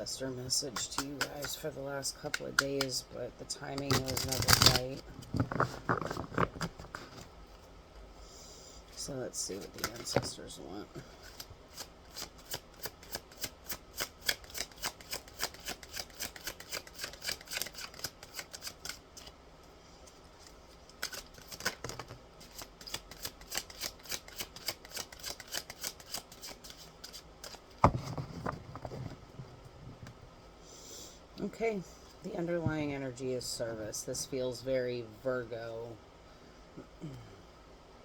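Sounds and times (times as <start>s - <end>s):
cards being shuffled: 3.7s - 7.3s, 9.6s - 10.4s, 11.2s - 19.4s, 20.1s - 29.4s.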